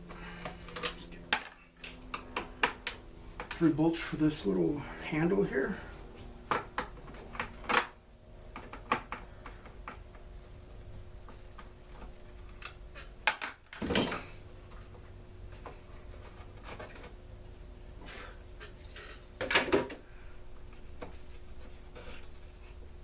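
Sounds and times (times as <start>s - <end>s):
plastic parts clunking and clattering: 11.6s - 15.0s, 15.6s - 17.2s, 18.6s - 20.0s.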